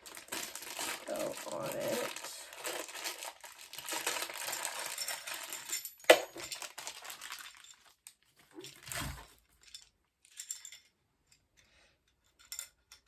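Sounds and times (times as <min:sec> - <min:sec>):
plastic packaging crinkling: 0:00.0 - 0:09.6.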